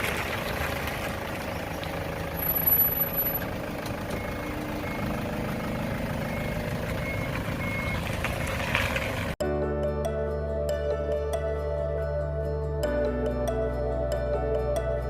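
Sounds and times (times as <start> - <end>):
truck engine and road rumble: 0.0 - 15.0
faint high beeps: 2.4 - 3.5.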